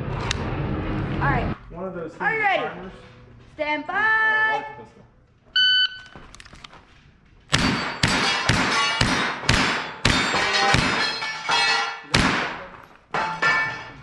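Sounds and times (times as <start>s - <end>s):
rifle shots cracking: 7.5s - 11.4s, 12.1s - 13.0s.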